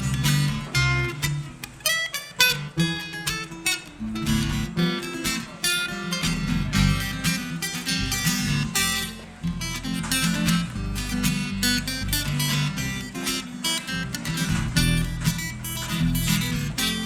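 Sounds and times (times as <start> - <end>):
bass line: 0.0 - 1.6, 4.0 - 4.9, 6.2 - 17.0
acoustic guitar strumming: 0.0 - 17.0.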